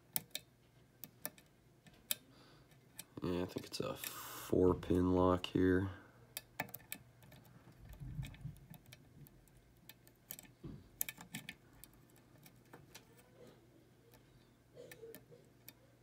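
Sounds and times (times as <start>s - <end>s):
faint low hum: 0.0s - 16.0s
lock pick clicking in a lock: 0.1s - 2.2s.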